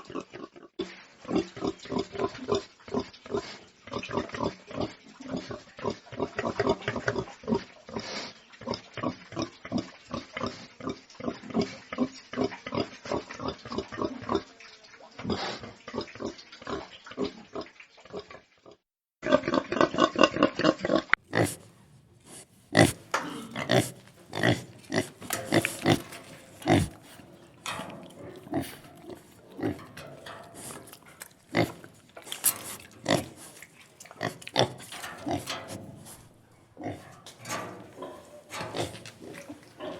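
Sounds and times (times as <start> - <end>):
pigs grunting: 19.2 - 39.9.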